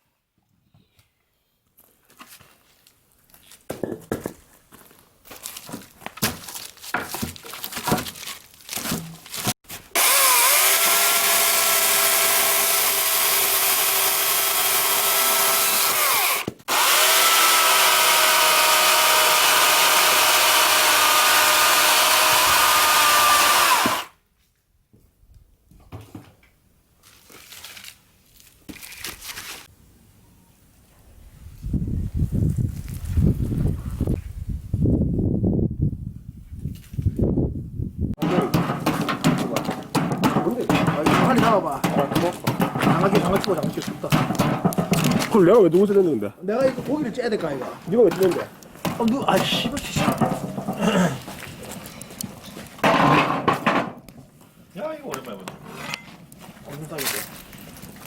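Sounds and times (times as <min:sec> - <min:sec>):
knocks and clatter of handling: 0:03.7 - 0:09.6, 0:38.2 - 0:45.4, 0:46.6 - 0:54.3
electric blower running: 0:10.0 - 0:24.1.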